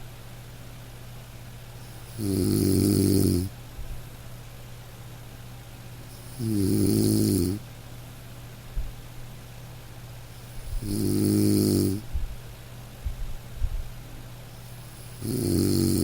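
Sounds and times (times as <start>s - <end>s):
person snoring: 2.1s - 3.5s, 6.2s - 7.6s, 10.7s - 12.0s, 15.0s - 16.0s.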